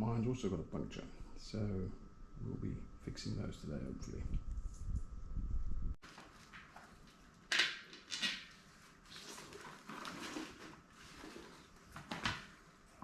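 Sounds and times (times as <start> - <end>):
rustling: 6.0 - 13.0.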